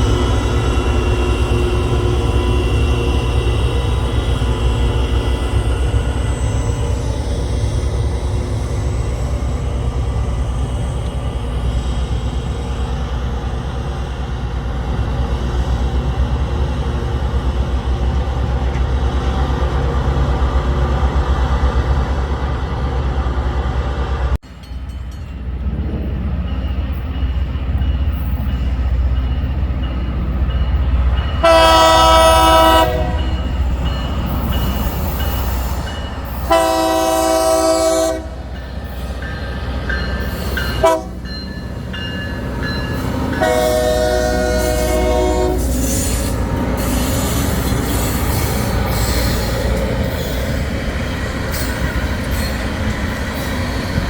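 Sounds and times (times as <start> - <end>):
diesel train rumbling: 0.0 - 54.0
train air horn blasts: 31.4 - 33.4, 36.4 - 38.4, 40.7 - 41.2, 43.4 - 46.3.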